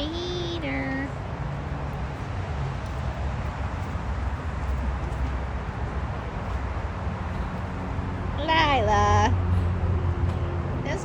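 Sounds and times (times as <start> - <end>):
outdoor background rumble: 0.0 - 11.0.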